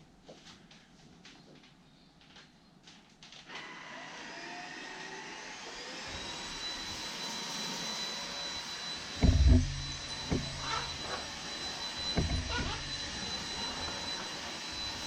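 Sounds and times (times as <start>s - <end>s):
stick vacuum motor whine: 3.5s - 15.0s
vacuum head rumbling on rug: 9.2s - 15.0s.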